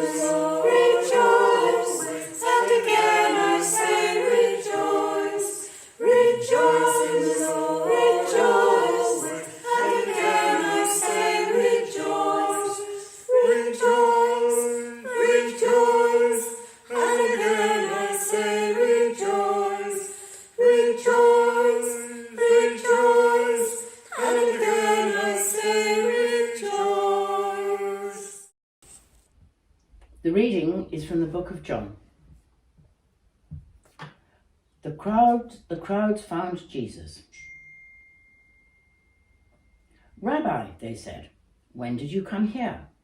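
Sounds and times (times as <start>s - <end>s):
choir singing a cappella: 0.0s - 28.5s.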